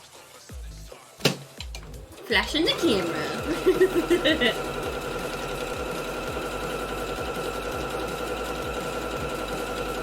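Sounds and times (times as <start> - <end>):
sewing machine running: 2.1 - 10.0.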